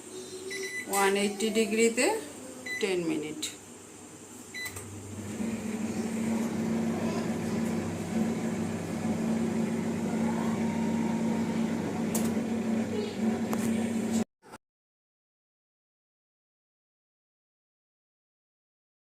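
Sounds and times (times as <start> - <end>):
microwave oven humming: 0.1 - 3.6, 4.5 - 14.2
microwave beep: 0.5 - 1.0, 4.6 - 4.9.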